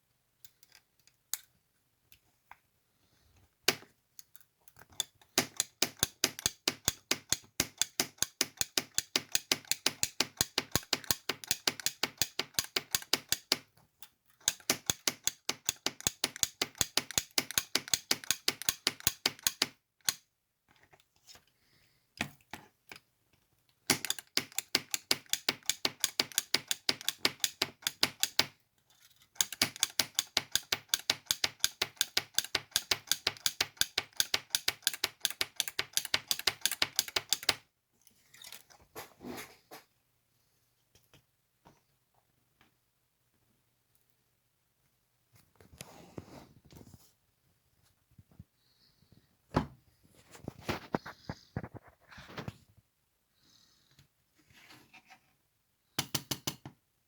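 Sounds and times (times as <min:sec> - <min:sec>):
cutting tool clicking: 0:03.7 - 0:13.6, 0:14.4 - 0:20.2, 0:23.9 - 0:28.5, 0:29.4 - 0:37.6.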